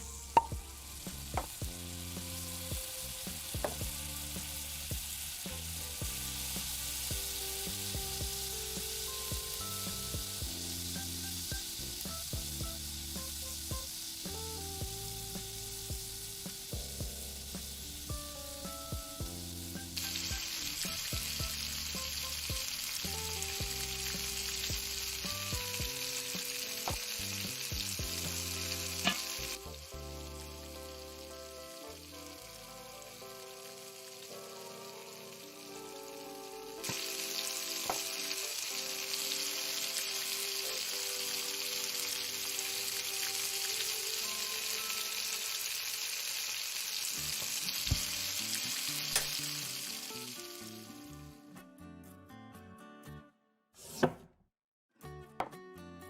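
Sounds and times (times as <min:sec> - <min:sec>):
soft low melody: 0:00.0 - 0:26.2, 0:27.0 - 0:45.2
frying sizzle: 0:00.0 - 0:51.4.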